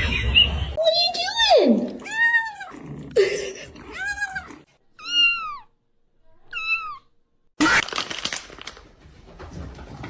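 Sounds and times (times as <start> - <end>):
cat meowing: 3.9 - 5.7, 6.4 - 7.1.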